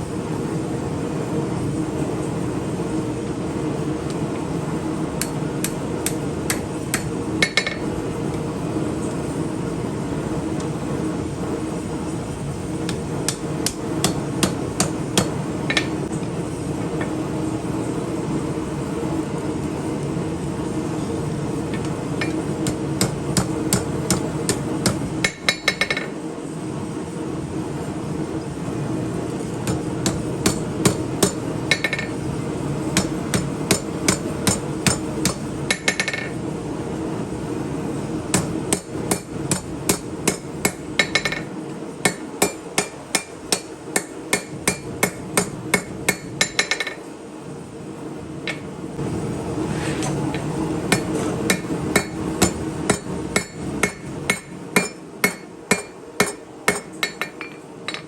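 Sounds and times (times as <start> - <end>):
hammer striking hot steel on anvil: 5.2 - 7.9, 12.8 - 16.1, 21.7 - 26.2, 29.6 - 32.2, 32.9 - 36.4, 38.3 - 47.1, 50.0 - 58.0.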